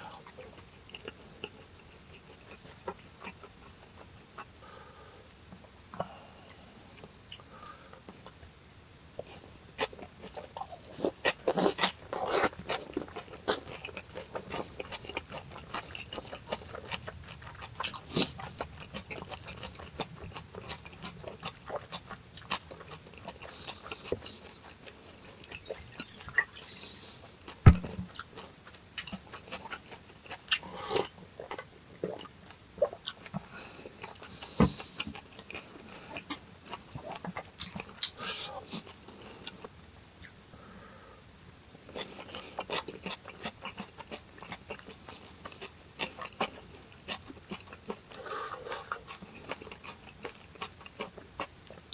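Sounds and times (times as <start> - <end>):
chewing and crunching food: 0.0 - 8.5, 9.2 - 40.8, 41.6 - 51.9
mouth clicks: 25.4 - 27.1.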